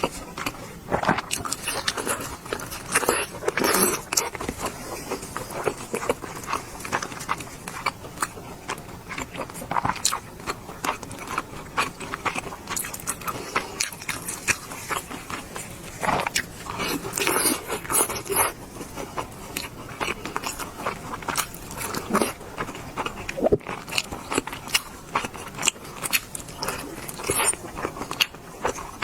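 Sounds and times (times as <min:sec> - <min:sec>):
chewing and lip-smacking: 0:00.0 - 0:29.0.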